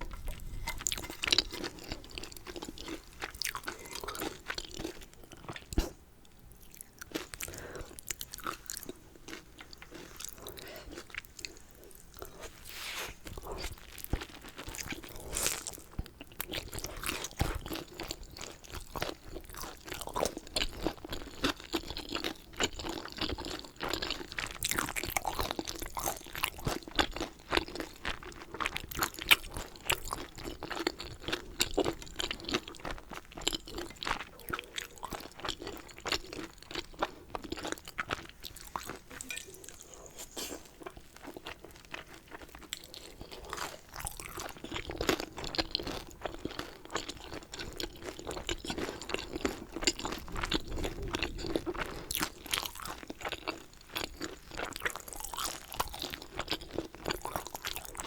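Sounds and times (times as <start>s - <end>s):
chewing food: 0.0s - 58.0s.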